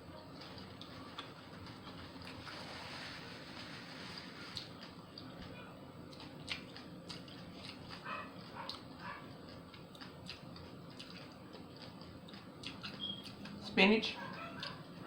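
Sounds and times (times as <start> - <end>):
chewing sandwich: 0.3 - 15.0.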